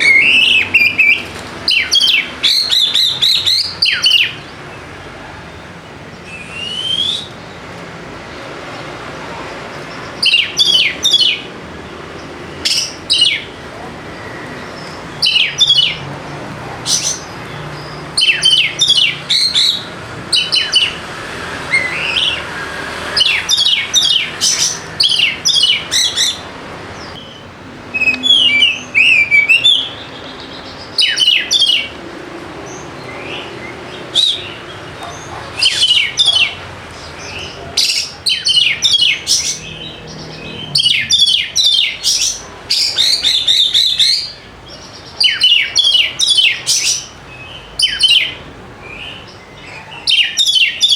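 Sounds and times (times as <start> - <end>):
bird singing high whistles: 0.0 - 4.4, 6.2 - 7.4, 10.2 - 11.4, 18.2 - 21.0, 23.1 - 26.4, 27.9 - 30.0, 31.0 - 31.9.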